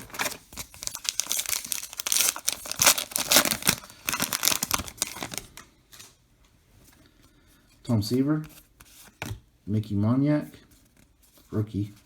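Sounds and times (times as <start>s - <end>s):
wrapper crinkling and tearing: 0.0s - 5.7s.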